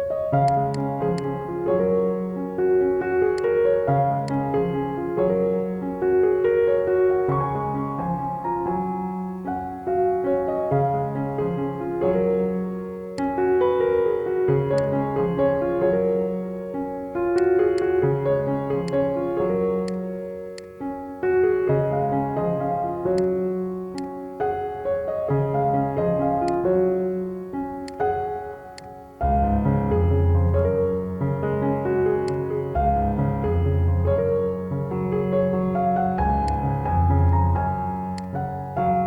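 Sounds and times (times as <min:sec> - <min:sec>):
keyboard melody: 0:00.0 - 0:39.0
faint light ticks: 0:23.2 - 0:23.4, 0:28.8 - 0:29.0, 0:38.2 - 0:38.4.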